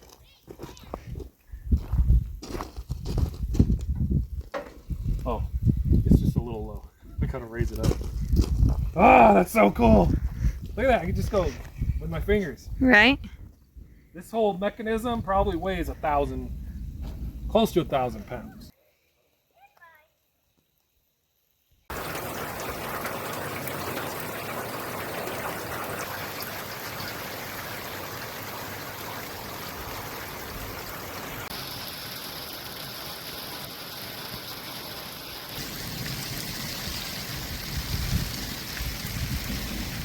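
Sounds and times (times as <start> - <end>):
wind buffeting microphone: 1.0 - 9.0, 9.7 - 14.1, 15.1 - 17.6, 37.5 - 40.0
steady rain falling: 21.9 - 40.0.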